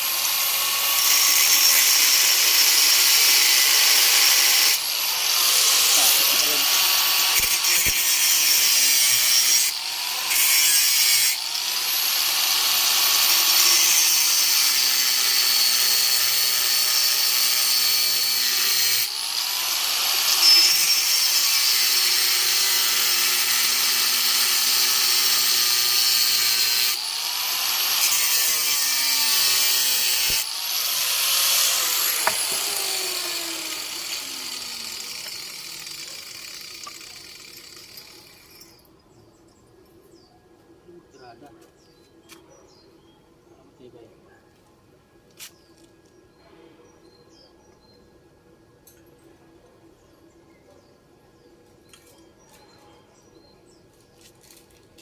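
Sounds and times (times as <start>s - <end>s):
power tool grinding metal: 0.0s - 38.9s.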